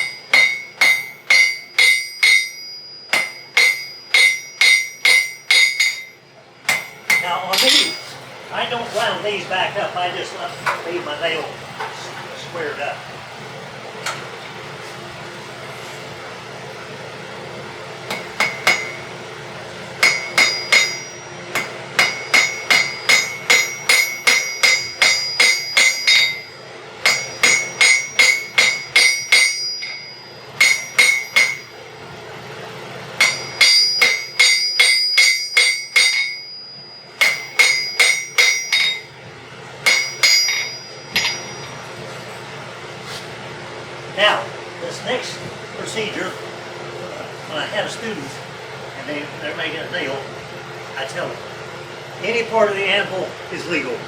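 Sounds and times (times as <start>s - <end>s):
hammer ringing on anvil: 0.0s - 8.2s, 18.1s - 19.2s, 20.0s - 31.9s, 33.2s - 39.2s, 39.8s - 42.0s.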